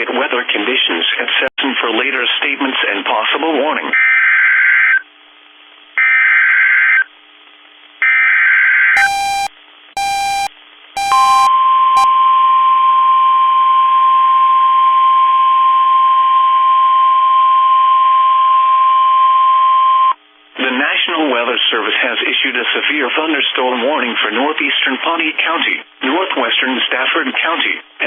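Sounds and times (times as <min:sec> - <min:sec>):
short electronic beeps: 0:09.0 - 0:12.1
steady warning alarm tone: 0:09.0 - 0:12.1.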